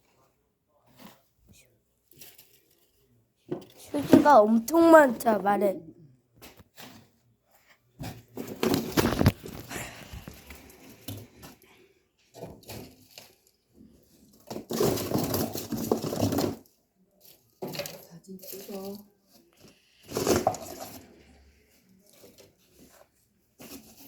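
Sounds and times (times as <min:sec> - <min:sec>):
paper rustling: 0:08.4 - 0:11.6.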